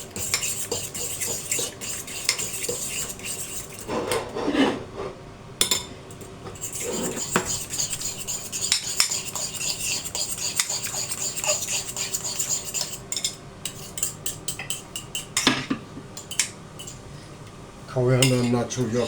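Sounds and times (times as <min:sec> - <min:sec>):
spoon stirring in a bowl: 0:00.0 - 0:04.6, 0:06.1 - 0:15.5, 0:16.2 - 0:17.0.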